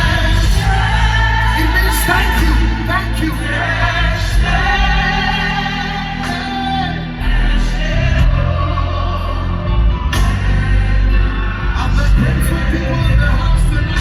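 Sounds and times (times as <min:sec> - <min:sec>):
band with heavy bass and drums: 0:00.0 - 0:14.0.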